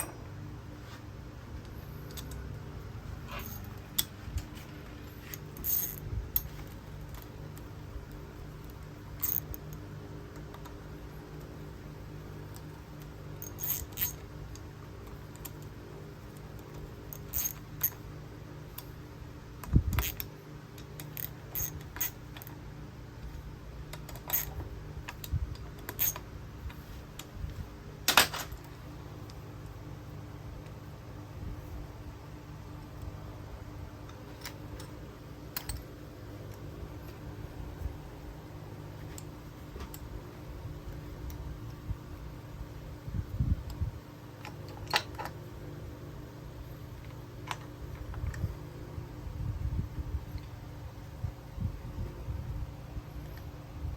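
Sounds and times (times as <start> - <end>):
steady low hum: 0.0 - 53.9
metallic clinks and taps: 35.6 - 35.9.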